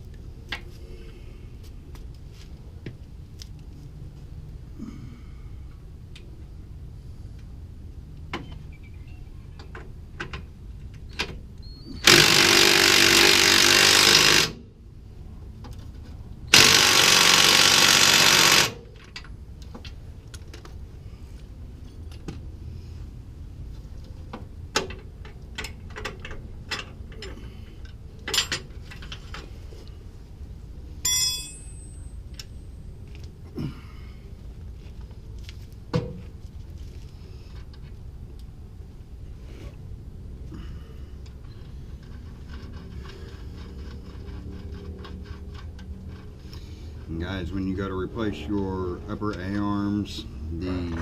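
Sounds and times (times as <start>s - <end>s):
impact wrench running: 12.0s - 14.6s, 16.5s - 18.8s
tools and parts clanking: 18.5s - 20.8s, 24.1s - 29.6s, 31.0s - 33.3s.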